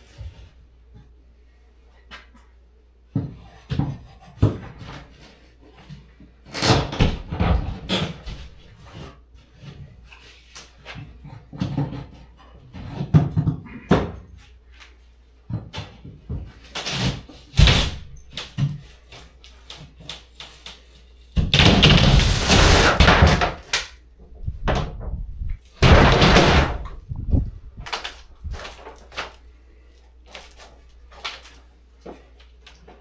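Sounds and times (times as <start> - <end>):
knocks and bangs on wall: 21.4 - 23.7, 25.8 - 26.9
debris crashing: 21.5 - 23.8, 25.8 - 26.9.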